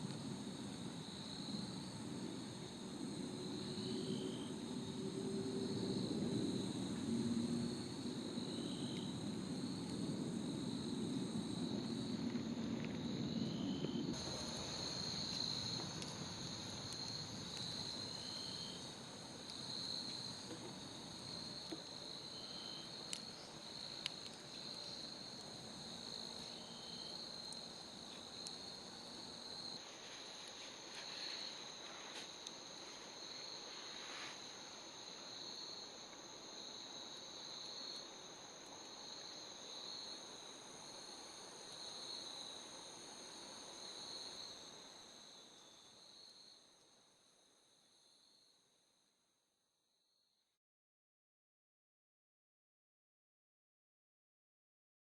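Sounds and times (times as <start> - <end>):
crickets trilling: 0.0 - 48.6
campfire crackling: 7.1 - 35.3.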